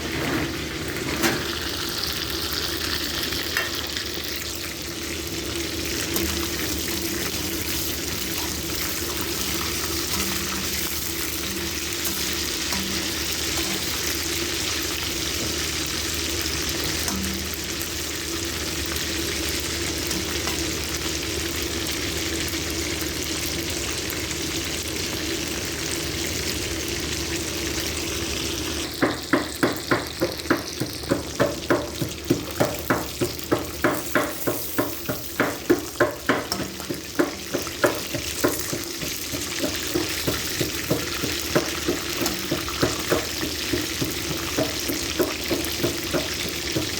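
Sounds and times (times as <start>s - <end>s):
food sizzling in oil: 0.0s - 46.9s
spatula stirring in pan: 5.0s - 17.9s, 29.6s - 46.9s.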